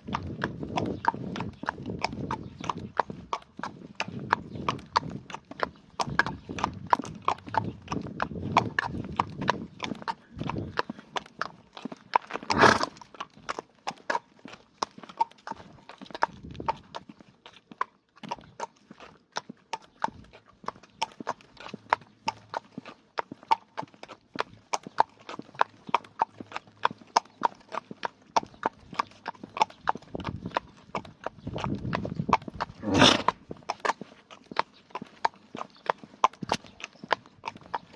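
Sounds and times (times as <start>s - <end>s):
horse hooves clip-clopping: 0.0s - 37.9s
horse sneezing: 12.5s - 13.0s, 32.8s - 33.4s.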